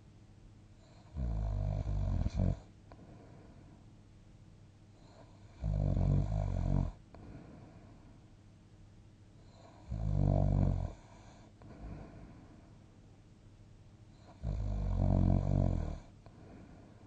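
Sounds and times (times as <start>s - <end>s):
loud rumbling snores: 0.9s - 2.7s, 5.2s - 7.0s, 9.6s - 11.4s, 14.2s - 16.1s
faint breathing: 2.2s - 3.9s, 7.0s - 8.4s, 11.0s - 12.9s, 16.0s - 17.0s.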